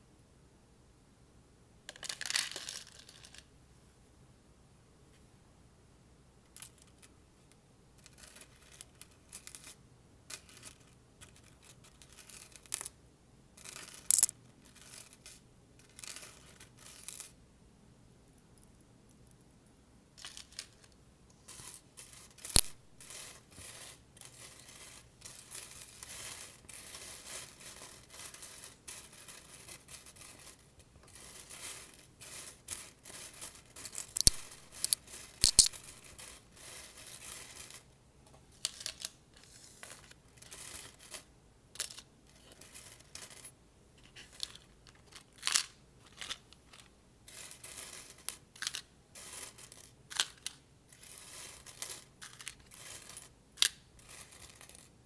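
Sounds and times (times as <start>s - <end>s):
paper clips clinking on magnet: 33.9s - 36.0s.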